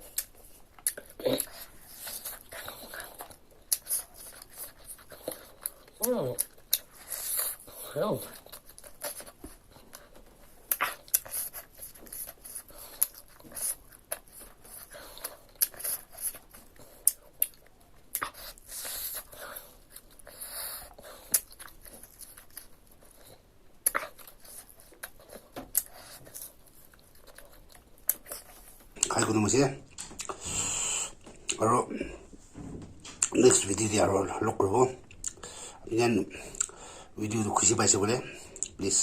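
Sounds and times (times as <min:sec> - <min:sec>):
person chewing: 0:00.0 - 0:32.3, 0:33.0 - 0:33.5, 0:35.0 - 0:35.8, 0:36.4 - 0:37.1, 0:38.4 - 0:38.8
wet mouth clicks and smacks: 0:29.9 - 0:30.4, 0:35.1 - 0:35.4, 0:36.5 - 0:36.8.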